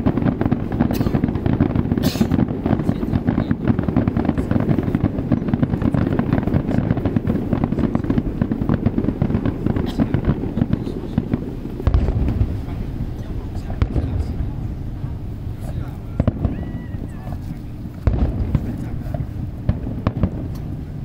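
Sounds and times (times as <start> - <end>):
fireworks bangs and crackles: 0.0 - 21.0
sharp firework cracks: 0.0 - 21.0.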